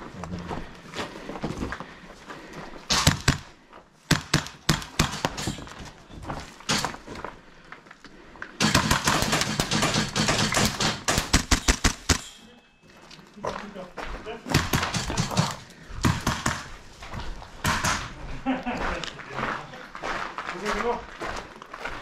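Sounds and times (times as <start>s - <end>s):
airsoft rifle shots: 2.9s - 3.5s, 4.1s - 5.6s, 8.6s - 12.3s, 14.5s - 16.7s, 17.6s - 18.1s.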